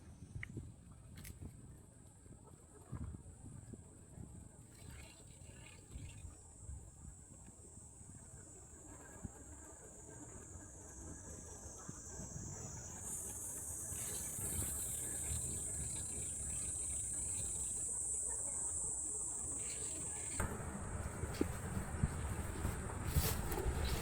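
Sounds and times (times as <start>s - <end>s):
insects shrilling: 9.9s - 24.0s.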